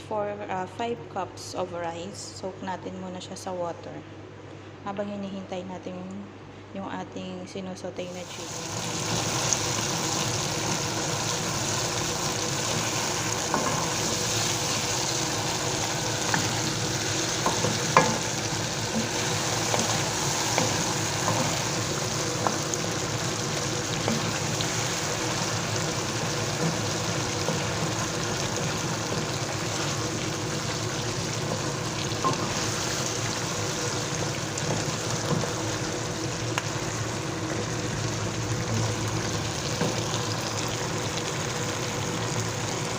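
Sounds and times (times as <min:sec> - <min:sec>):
food sizzling in oil: 0:08.2 - 0:42.9.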